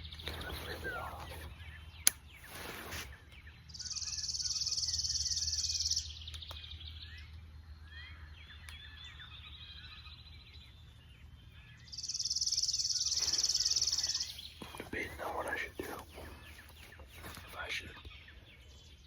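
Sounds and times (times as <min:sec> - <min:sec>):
birds whistling: 0:00.0 - 0:19.0
bird trilling: 0:03.7 - 0:06.2, 0:11.8 - 0:17.7.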